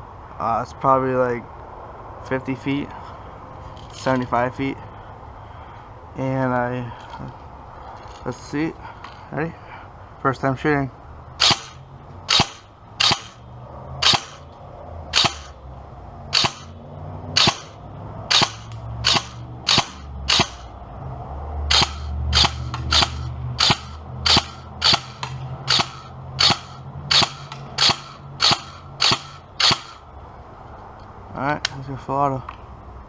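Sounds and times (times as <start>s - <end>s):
airsoft rifle shots: 11.4s - 13.4s, 14.0s - 14.5s, 15.1s - 15.6s, 16.3s - 16.8s, 17.4s - 20.7s, 21.7s - 30.0s.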